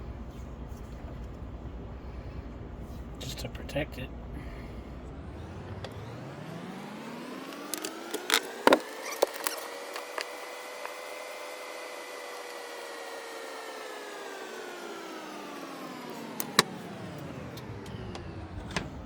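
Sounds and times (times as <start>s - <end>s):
motor whine rising in pitch: 4.4s - 19.0s
sharp clicks and crackles: 7.4s - 11.0s, 16.4s - 19.0s.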